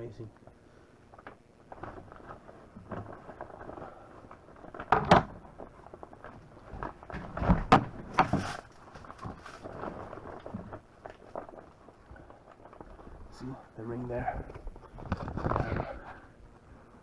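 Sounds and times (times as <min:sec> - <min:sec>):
knocks of objects being handled: 0:04.6 - 0:11.7.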